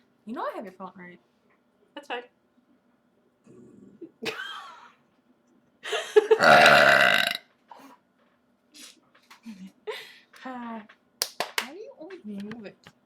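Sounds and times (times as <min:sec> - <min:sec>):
person burping: 0:06.4 - 0:07.4.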